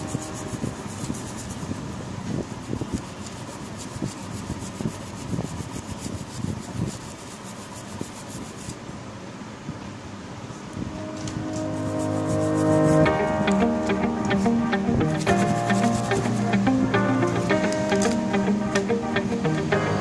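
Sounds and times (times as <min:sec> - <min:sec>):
brush scrubbing circuit board: 0:00.0 - 0:08.8, 0:11.7 - 0:13.1, 0:15.3 - 0:16.7.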